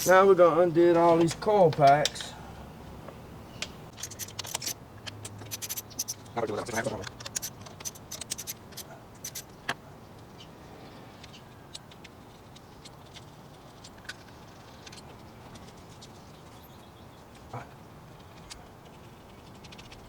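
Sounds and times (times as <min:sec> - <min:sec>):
hand tools clicking and tapping: 0:03.6 - 0:09.8.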